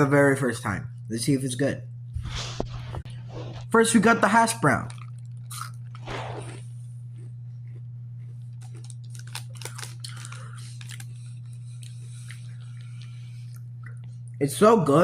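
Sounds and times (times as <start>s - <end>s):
low hum: 0.0s - 15.0s
crispy food crunching: 4.6s - 13.2s.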